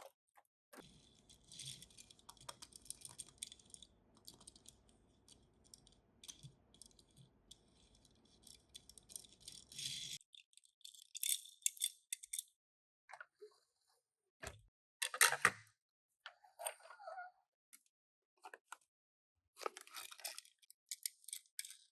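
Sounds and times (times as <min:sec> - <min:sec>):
toy cars rattling and clicking: 0:00.8 - 0:12.5, 0:19.6 - 0:21.9
toy clatter: 0:00.8 - 0:12.5, 0:19.8 - 0:21.9.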